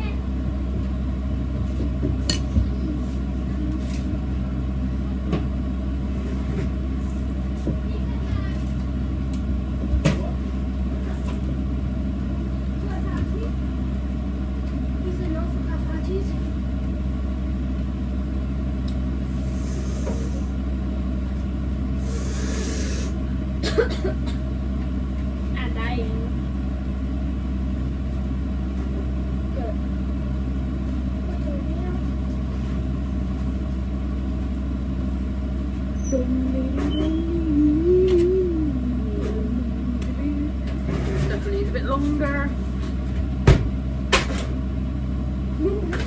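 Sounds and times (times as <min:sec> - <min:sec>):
low mechanical hum: 0:00.0 - 0:46.0
short hisses: 0:19.4 - 0:20.5, 0:22.0 - 0:23.2
kitchen appliance humming: 0:28.9 - 0:40.9.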